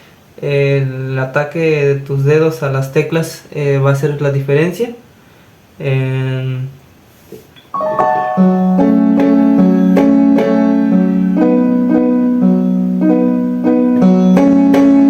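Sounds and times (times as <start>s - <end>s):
electronic keyboard piano melody: 7.7s - 15.0s.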